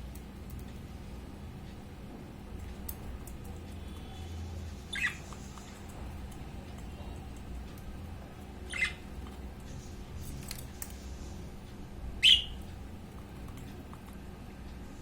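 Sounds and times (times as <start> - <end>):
budgerigar chirps: 4.9 - 5.3, 8.7 - 9.0, 12.2 - 12.6.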